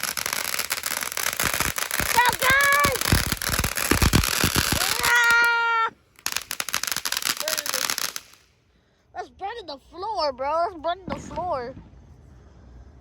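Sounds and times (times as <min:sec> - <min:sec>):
high-pitched firework scream: 0:00.0 - 0:08.4
firework crackling: 0:00.0 - 0:08.7.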